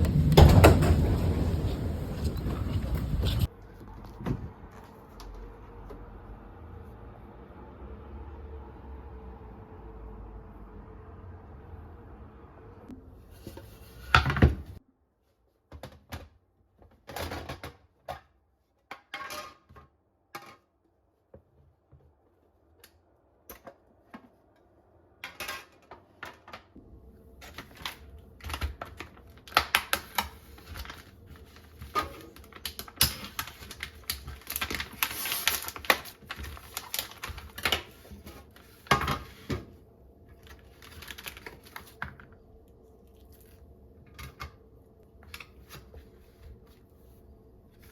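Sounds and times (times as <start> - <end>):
objects clattering: 0.0 - 3.5.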